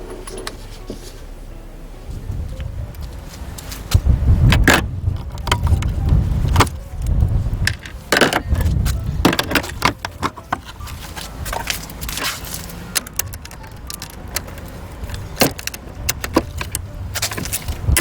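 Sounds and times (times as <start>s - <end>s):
low uneven rumbling: 0.0s - 18.0s
metallic clicks and clinks: 5.2s - 18.0s.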